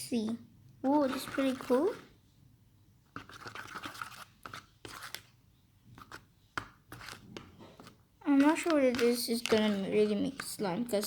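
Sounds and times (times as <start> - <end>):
utensil scraping a bowl: 0.8 - 2.1, 3.1 - 5.3, 6.9 - 11.0.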